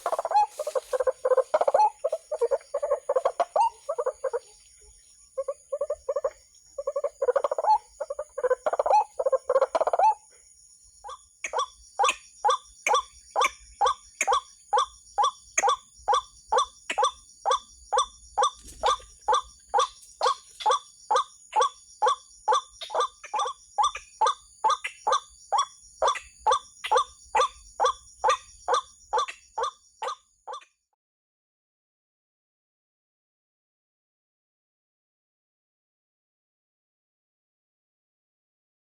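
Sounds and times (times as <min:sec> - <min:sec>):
waterhen calling: 0:00.0 - 0:10.2, 0:15.6 - 0:30.6.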